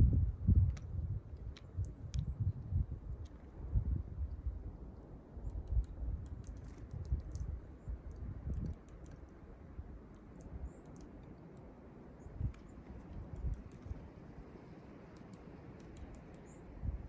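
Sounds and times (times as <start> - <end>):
light clicks and taps: 0.6 - 2.3, 5.5 - 9.4, 10.1 - 11.7, 12.4 - 14.0, 15.1 - 16.7.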